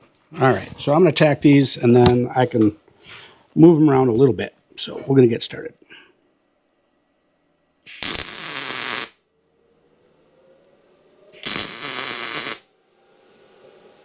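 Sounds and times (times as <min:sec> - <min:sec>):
welding arc crackling: 0:07.8 - 0:09.2, 0:11.4 - 0:12.7.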